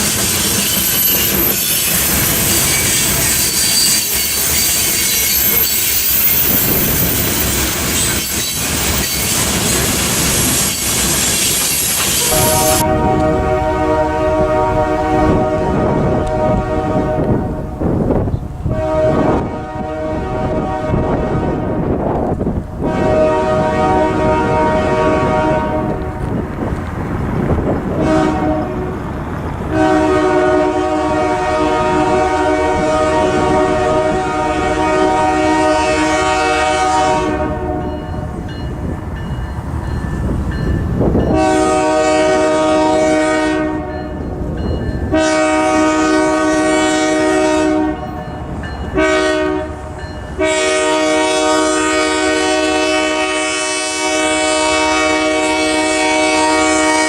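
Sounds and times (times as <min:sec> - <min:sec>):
locomotive air horn blasts: 0:00.0 - 0:08.3, 0:12.1 - 0:17.8, 0:18.6 - 0:22.0, 0:22.8 - 0:26.3, 0:28.0 - 0:28.9, 0:29.7 - 0:38.0, 0:41.2 - 0:44.1, 0:45.1 - 0:48.2, 0:49.0 - 0:57.0
passing train rumble: 0:00.0 - 0:57.0.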